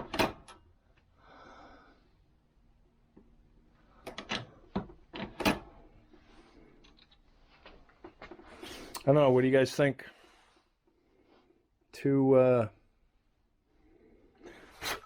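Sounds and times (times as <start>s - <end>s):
scrape: 8.4s - 8.9s, 10.0s - 11.5s, 14.5s - 15.0s.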